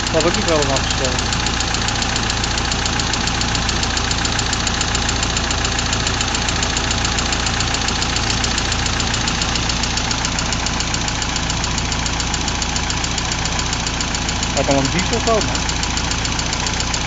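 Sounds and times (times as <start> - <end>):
car engine idling: 0.0 - 17.0
fast ticking clatter: 0.0 - 17.0.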